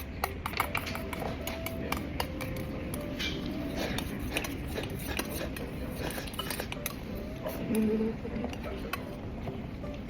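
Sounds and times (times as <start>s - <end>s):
chewing clicks and taps: 0.0s - 7.0s.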